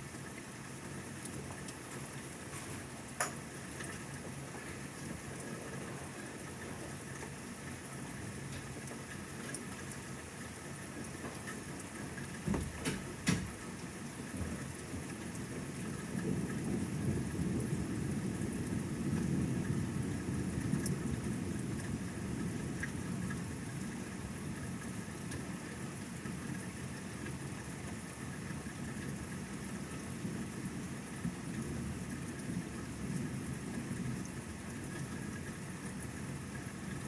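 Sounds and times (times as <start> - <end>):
low rumble of thunder: 12.0 - 25.0, 29.2 - 37.0.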